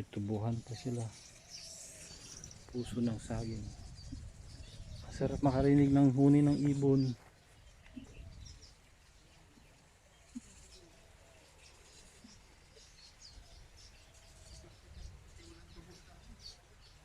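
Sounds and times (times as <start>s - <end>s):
songbirds chirping: 0.0s - 17.0s
low wind rumble: 2.6s - 6.3s.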